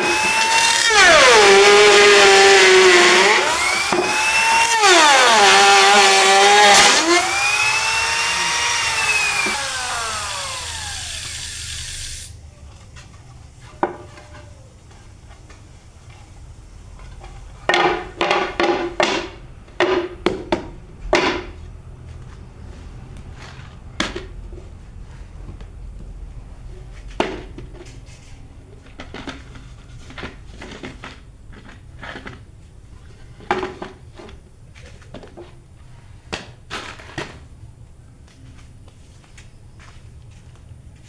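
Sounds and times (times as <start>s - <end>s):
electric router running: 0.0s - 12.4s.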